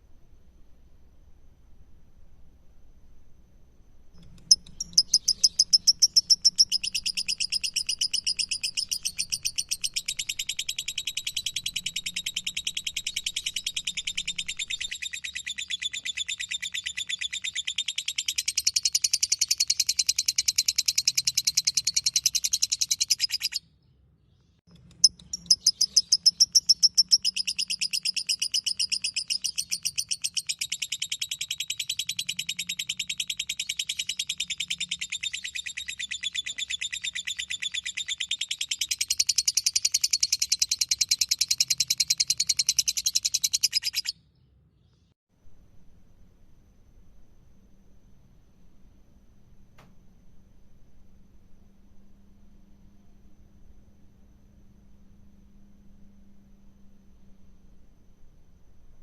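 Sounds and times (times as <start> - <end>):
lovebird shrill chatter: 4.4 - 23.6, 25.0 - 44.1.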